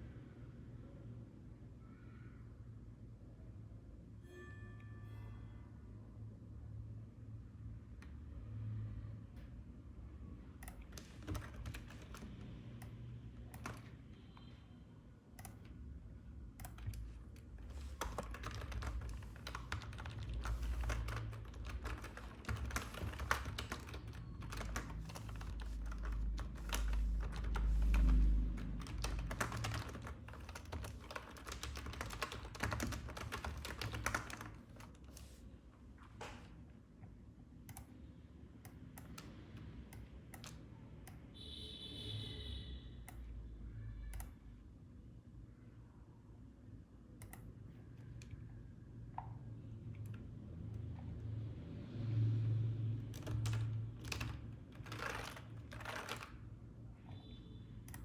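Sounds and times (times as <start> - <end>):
computer keyboard typing: 10.6 - 14.2, 15.3 - 15.8, 16.5 - 35.4, 38.7 - 41.3, 44.0 - 44.4, 53.0 - 57.2, 57.8 - 58.0.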